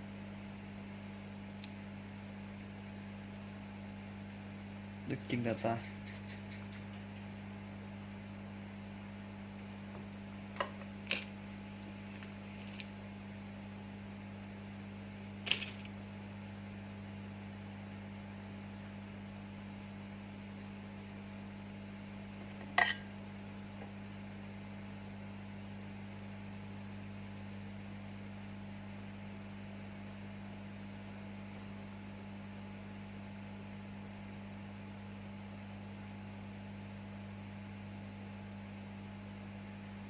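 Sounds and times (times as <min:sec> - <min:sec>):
low electrical hum: 0:00.0 - 0:40.0.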